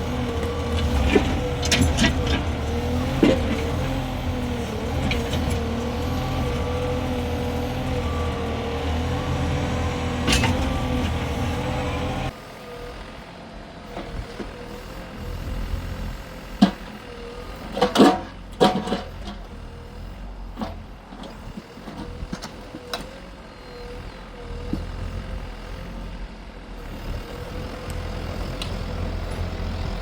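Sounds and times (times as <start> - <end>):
excavator engine drone: 0.0 - 30.0.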